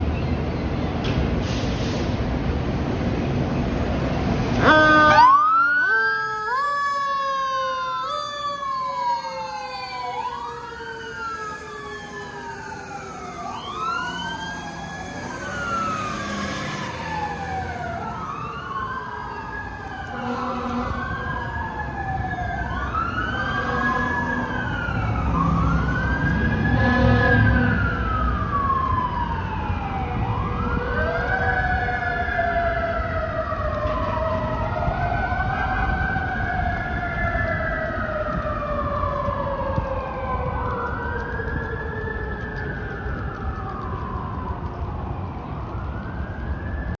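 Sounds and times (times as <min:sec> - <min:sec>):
deep horn blasts: 0:04.5 - 0:05.3, 0:20.1 - 0:21.4, 0:26.4 - 0:28.2
slow winding siren: 0:04.5 - 0:47.0
electronic siren sweeping: 0:04.6 - 0:44.4.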